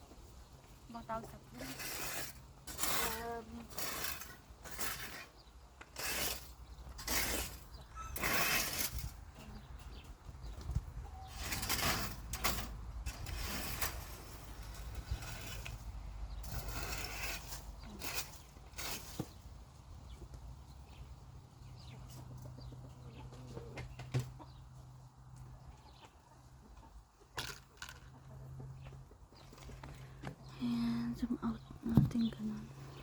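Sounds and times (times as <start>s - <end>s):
cleaning tool scraping: 1.6s - 9.0s, 16.5s - 19.2s.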